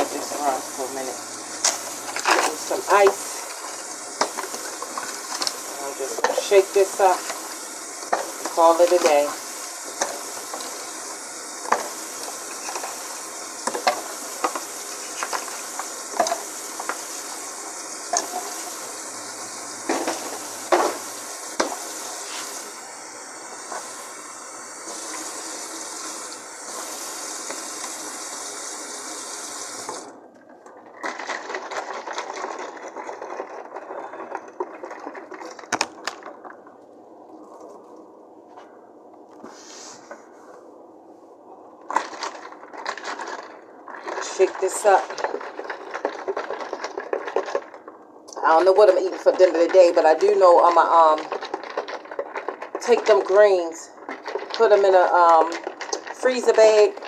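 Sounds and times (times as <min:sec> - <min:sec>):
soft ice crackling: 0:00.1 - 0:57.0
ice cubes clinking in a cup: 0:30.7 - 0:36.5, 0:41.9 - 0:57.0.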